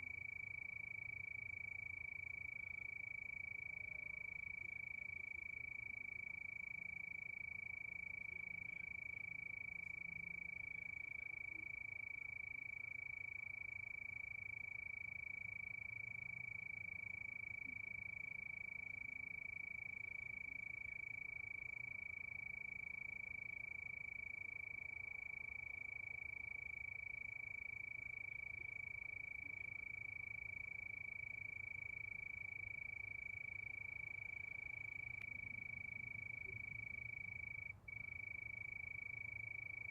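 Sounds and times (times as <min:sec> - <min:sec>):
crickets chirping: 0:00.0 - 0:39.9
faint low rumble: 0:33.2 - 0:39.9.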